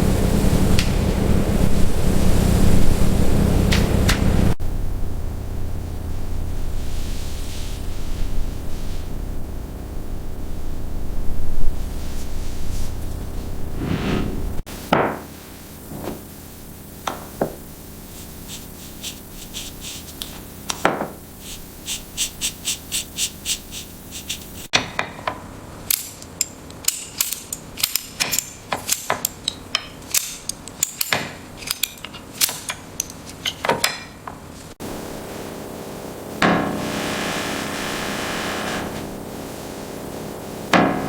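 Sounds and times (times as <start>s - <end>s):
sharp metal taps and clanks: 24.7s - 34.4s
light regular clicks: 25.2s - 34.0s.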